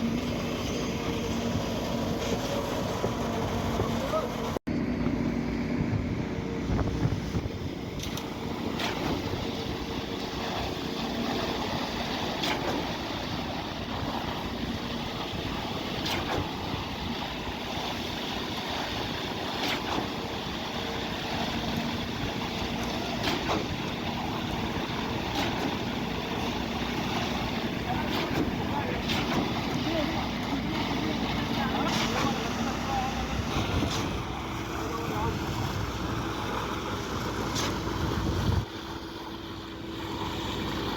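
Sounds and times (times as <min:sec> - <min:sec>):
concrete pump running: 0:00.0 - 0:40.9
wind on microphone: 0:05.6 - 0:08.0, 0:37.9 - 0:38.7.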